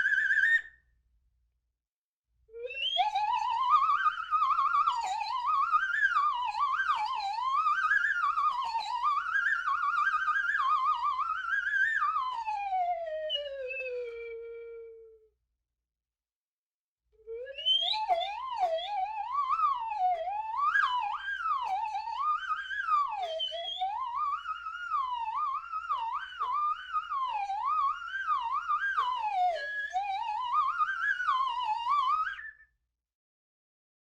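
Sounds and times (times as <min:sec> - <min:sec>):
slide whistle: 0:00.0 - 0:00.8, 0:17.3 - 0:32.8.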